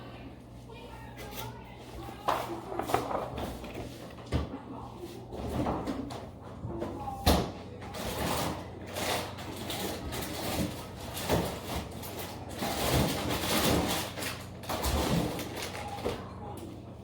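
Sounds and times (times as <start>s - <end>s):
food packaging rustling: 8.8s - 16.3s.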